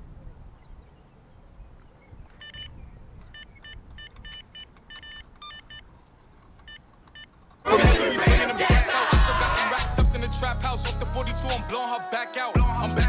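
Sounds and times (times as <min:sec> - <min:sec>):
electronic bite alarm beeping: 0:02.4 - 0:06.0, 0:06.6 - 0:07.3.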